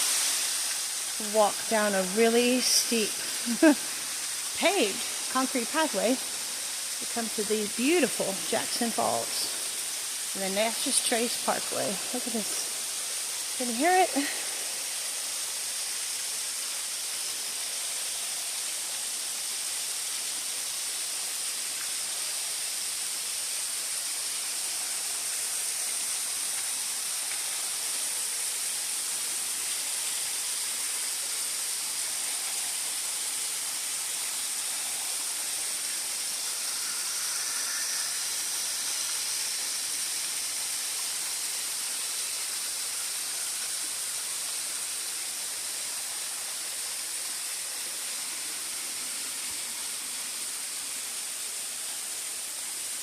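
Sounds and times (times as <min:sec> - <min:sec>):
waterfall rushing: 0:00.0 - 0:53.0.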